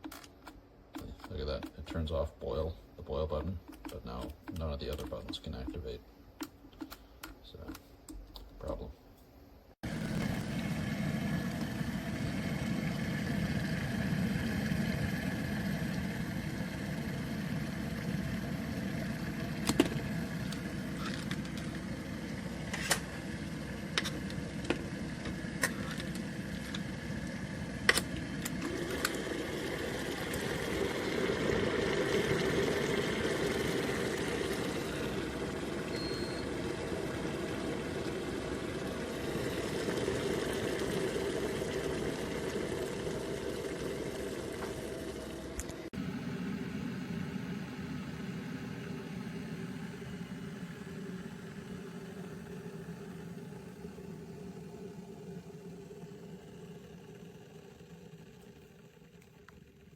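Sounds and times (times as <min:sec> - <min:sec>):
electric kettle heating water: 0:00.0 - 0:08.9, 0:09.8 - 0:59.9.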